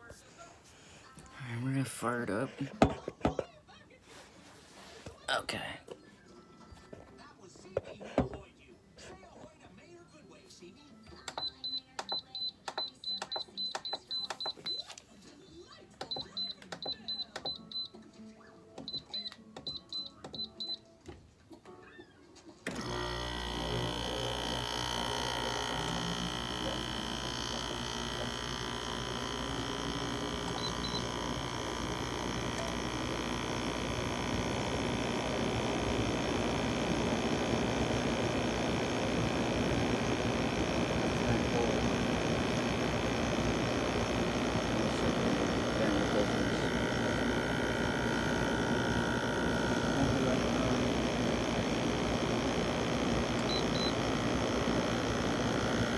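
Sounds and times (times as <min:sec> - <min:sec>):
air conditioner humming: 0:22.7 - 0:55.9.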